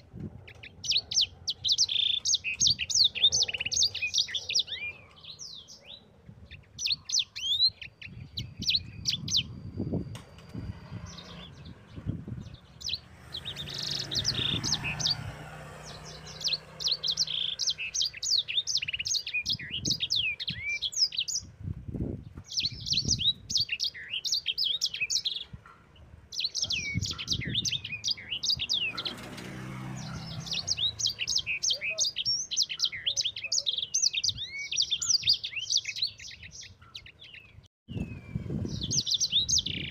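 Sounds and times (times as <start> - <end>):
canary singing trills: 0.0 - 21.6, 22.2 - 39.9.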